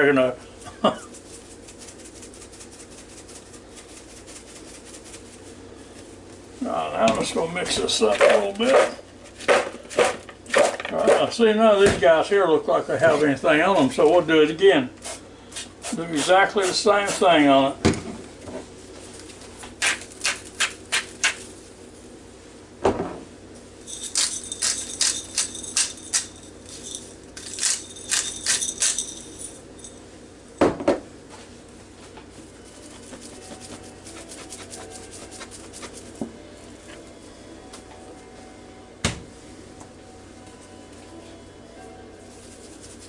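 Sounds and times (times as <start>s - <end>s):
seasoning shaker shakes: 0.8s - 6.2s, 19.0s - 21.7s, 23.8s - 30.0s, 32.3s - 36.2s, 42.1s - 43.0s.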